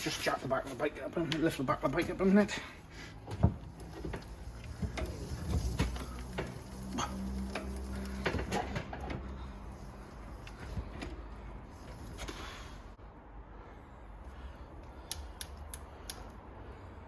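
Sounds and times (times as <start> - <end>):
clicks and knocks of bike handling: 3.2 - 9.5.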